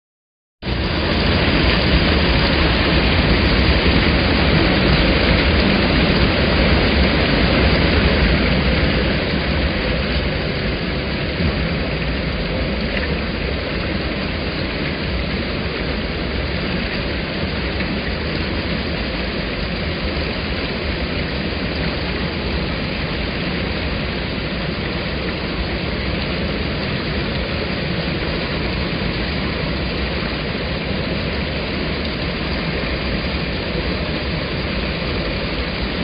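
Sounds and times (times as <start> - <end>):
waterfall rushing: 0.7 - 36.0.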